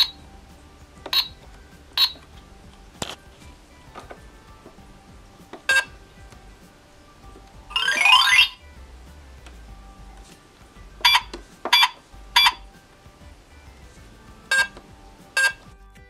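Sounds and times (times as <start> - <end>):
faint background music: 0.0 - 16.0
short electronic beeps: 1.1 - 1.4, 7.7 - 8.6, 11.0 - 12.6.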